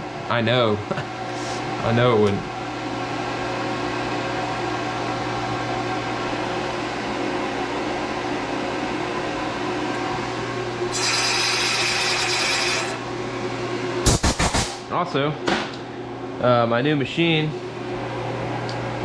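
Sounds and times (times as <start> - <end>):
cnc mill humming: 0.0 - 14.0.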